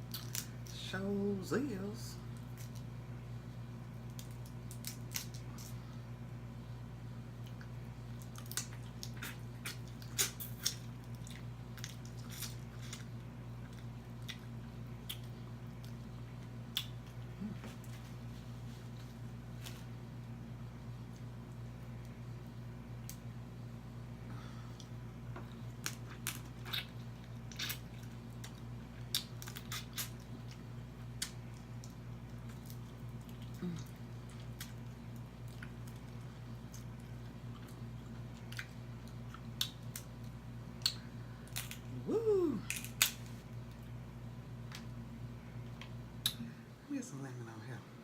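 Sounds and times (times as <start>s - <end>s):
steady low hum: 0.0s - 48.0s
chewing: 7.4s - 16.0s, 25.8s - 30.6s, 31.2s - 41.9s
person humming: 41.9s - 42.8s.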